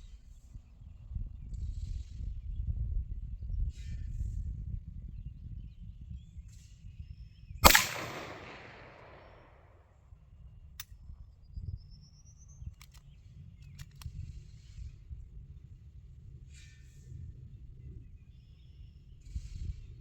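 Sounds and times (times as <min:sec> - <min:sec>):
faint clicks: 0:07.6 - 0:09.2
gunshot with echo: 0:07.6 - 0:09.4.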